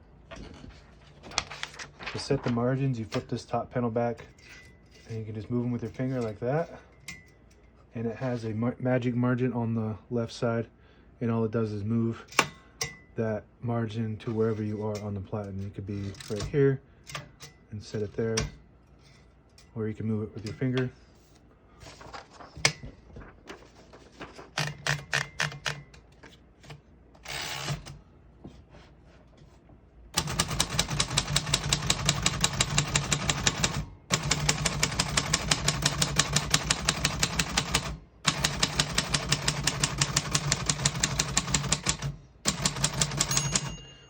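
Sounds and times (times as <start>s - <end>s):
typewriter typing: 24.3s - 25.9s, 27.3s - 27.9s, 30.2s - 43.7s.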